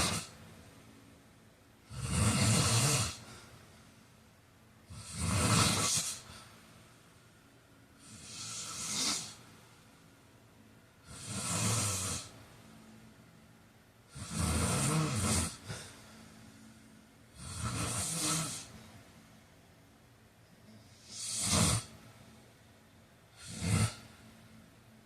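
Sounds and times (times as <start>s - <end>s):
man snoring: 0.0s - 0.3s, 1.9s - 3.5s, 4.9s - 6.3s, 8.0s - 9.4s, 11.0s - 12.3s, 14.1s - 15.9s, 17.3s - 18.8s, 20.9s - 21.9s, 23.4s - 24.1s.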